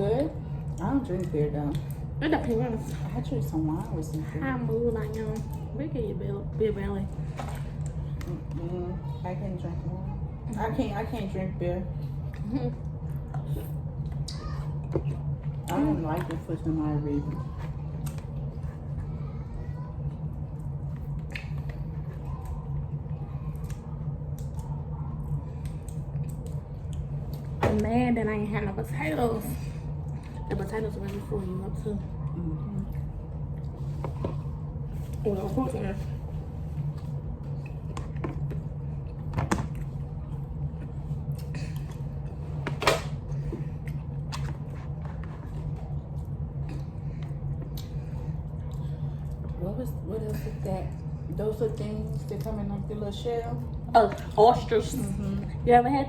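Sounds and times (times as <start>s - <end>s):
low hum: 0.0s - 56.0s
chewing and smacking: 0.2s - 5.8s, 12.0s - 27.9s, 32.3s - 52.8s.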